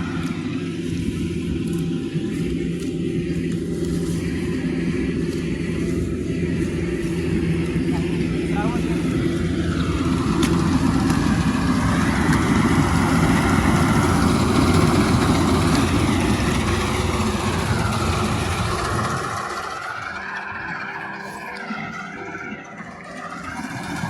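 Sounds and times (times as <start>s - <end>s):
engine rumbling low: 0.0s - 24.0s.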